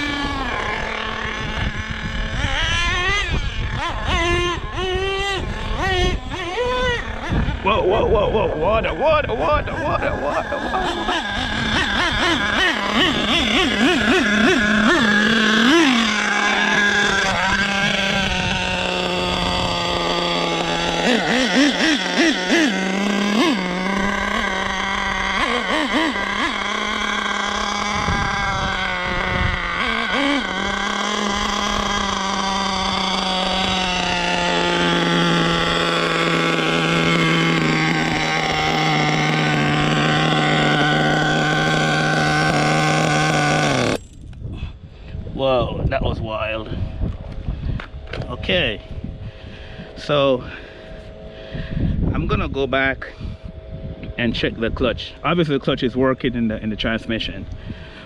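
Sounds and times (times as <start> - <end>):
model engine revving: 0.0 - 44.2.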